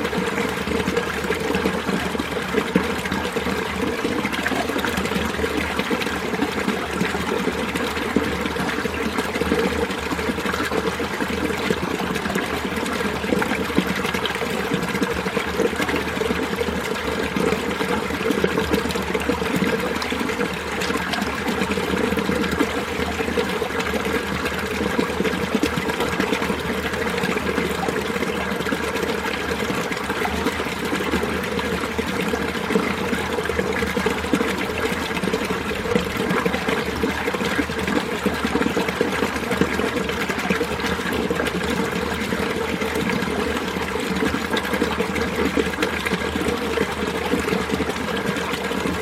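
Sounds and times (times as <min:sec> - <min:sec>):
stream babbling water: 0:00.0 - 0:49.0.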